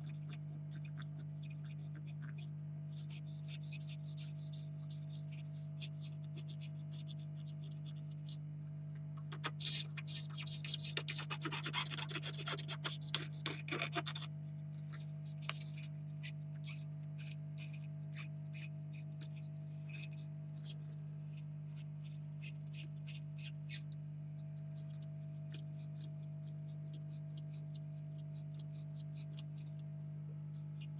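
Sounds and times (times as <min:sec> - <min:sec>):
small tools scratching and clicking: 0:09.2 - 0:15.9
steady low hum: 0:12.2 - 0:30.9.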